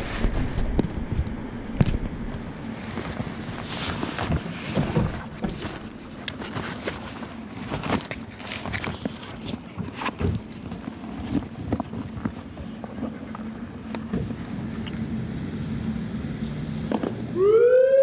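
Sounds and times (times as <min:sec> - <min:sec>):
wind rumble on microphone: 0:00.0 - 0:06.3
footsteps walking: 0:00.0 - 0:07.3.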